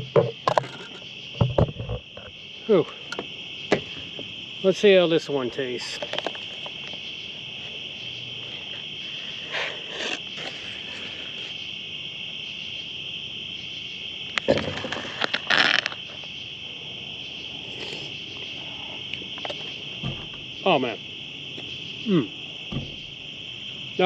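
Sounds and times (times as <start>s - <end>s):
crickets chirping: 0.0s - 24.0s
close scraping and rustling: 0.2s - 2.1s, 8.4s - 11.6s, 14.5s - 16.3s.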